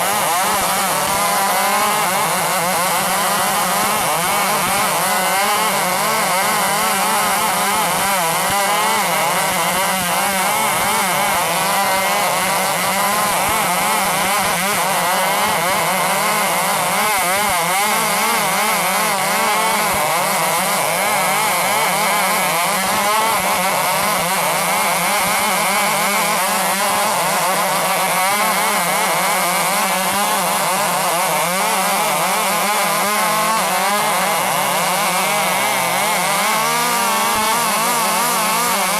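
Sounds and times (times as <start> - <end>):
chainsaw cutting log: 0.0 - 38.9.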